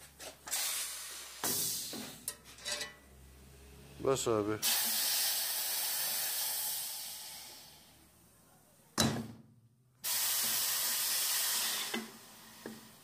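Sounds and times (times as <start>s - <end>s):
compressed air hiss: 0.2s - 2.2s, 4.6s - 8.0s, 10.0s - 13.0s.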